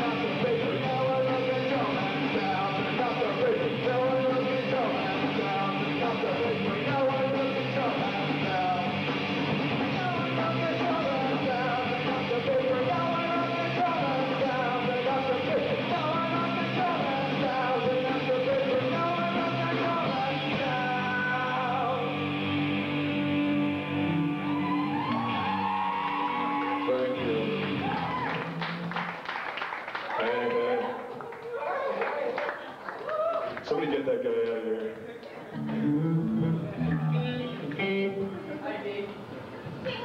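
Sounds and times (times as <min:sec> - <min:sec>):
live rock band playing: 0:00.0 - 0:25.6, 0:35.6 - 0:38.3
person singing: 0:00.0 - 0:28.2, 0:35.6 - 0:39.0.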